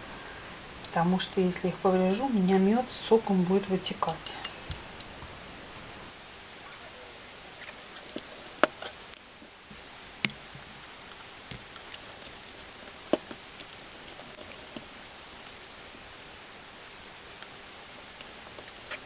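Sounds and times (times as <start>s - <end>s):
tool scraping radish flesh: 18.0s - 19.0s.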